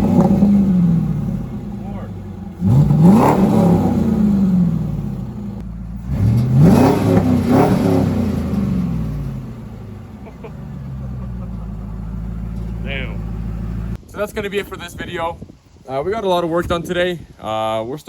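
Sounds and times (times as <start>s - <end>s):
car engine revving and idling: 0.0s - 14.0s.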